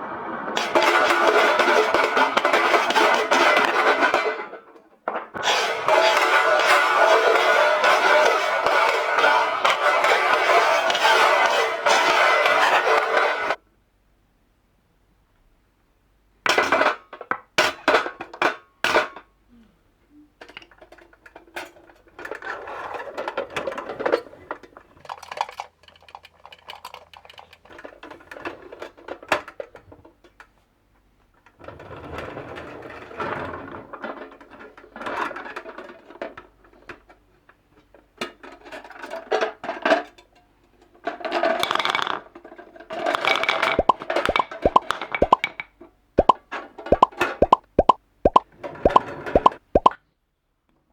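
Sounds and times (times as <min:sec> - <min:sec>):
wooden balls rattling down track: 0:41.6 - 0:42.2.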